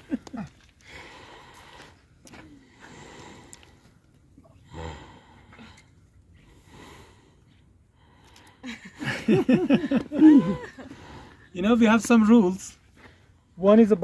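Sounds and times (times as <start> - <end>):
person laughing breathily: 0.0 - 0.7, 8.6 - 11.4.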